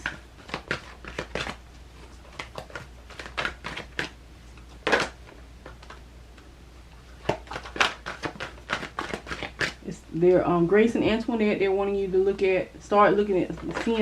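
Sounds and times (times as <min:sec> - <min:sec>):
cards tapping and rustling: 0:00.0 - 0:09.8, 0:13.4 - 0:14.0.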